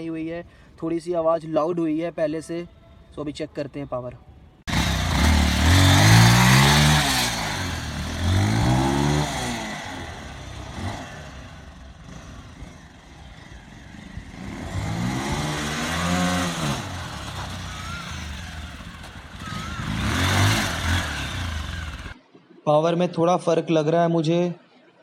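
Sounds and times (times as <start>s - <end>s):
motorcycle engine revving: 4.7s - 22.2s.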